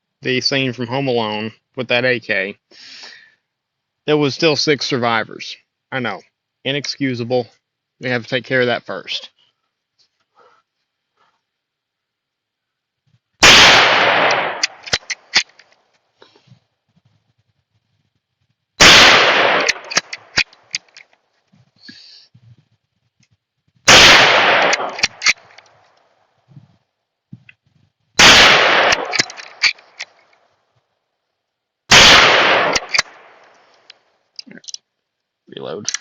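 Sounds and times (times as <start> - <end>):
sharp ticks and cracks: 13.1 - 16.3, 18.8 - 22.0, 22.7 - 26.3, 27.4 - 30.9, 31.9 - 36.0
gunshots: 13.4 - 15.5, 18.8 - 20.5, 23.9 - 25.6, 28.2 - 30.1, 31.9 - 33.4.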